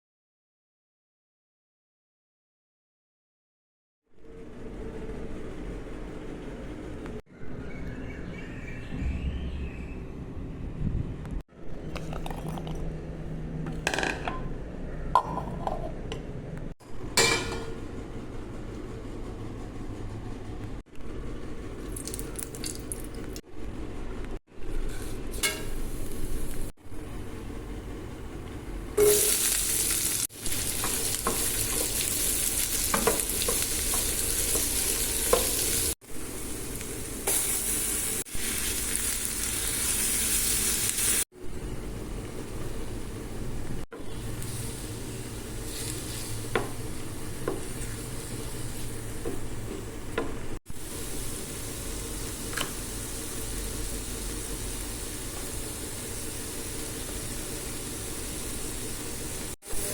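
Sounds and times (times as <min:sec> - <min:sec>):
hot oil sizzling in a pan: 0:29.0 - 0:41.3, 0:44.2 - 0:49.1, 0:50.7 - 0:59.9.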